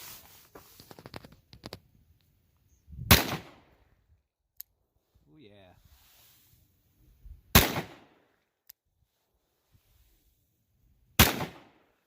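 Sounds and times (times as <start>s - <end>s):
revolver gunshots: 3.1s - 3.7s, 7.5s - 8.2s, 11.2s - 11.9s.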